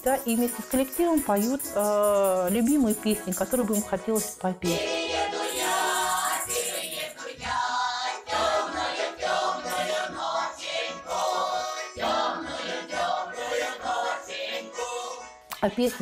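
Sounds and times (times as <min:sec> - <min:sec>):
jingling rattle shaken: 0:00.0 - 0:04.4, 0:05.5 - 0:07.2
group singing folk song: 0:04.6 - 0:16.0.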